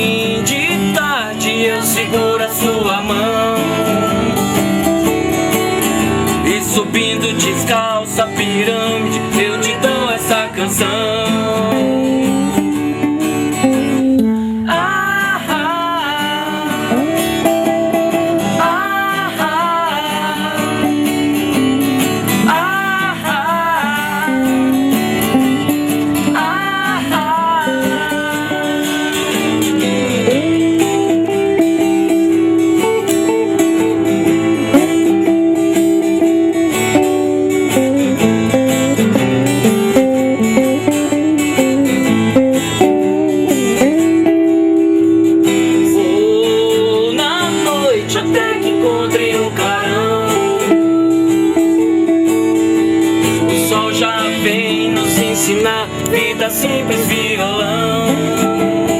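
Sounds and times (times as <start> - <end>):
strummed acoustic guitar: 0.0 - 58.9
wavering lead melody: 23.9 - 47.3.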